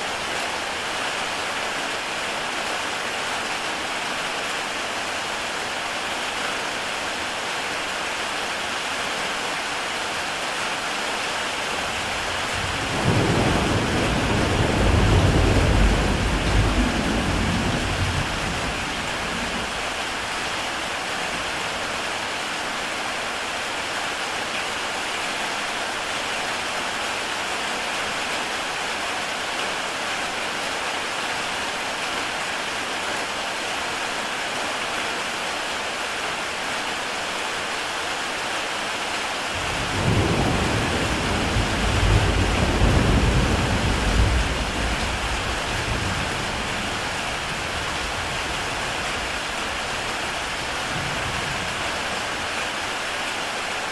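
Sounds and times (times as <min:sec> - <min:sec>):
heavy rain on a tile roof: 0:00.0 - 0:53.9
low rumble of thunder: 0:11.9 - 0:20.0, 0:39.6 - 0:49.9.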